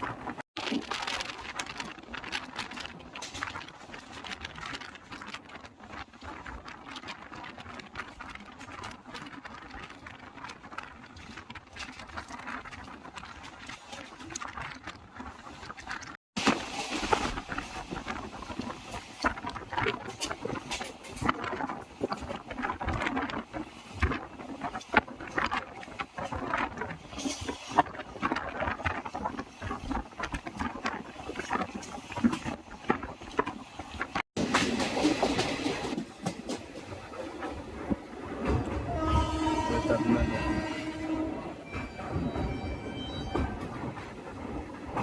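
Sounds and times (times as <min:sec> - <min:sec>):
train clattering: 0:16.4 - 0:45.0.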